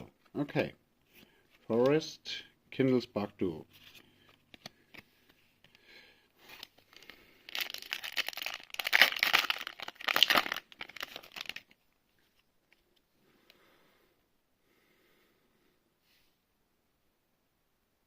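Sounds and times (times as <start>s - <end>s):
foil wrapper crinkling and tearing: 6.4s - 11.8s.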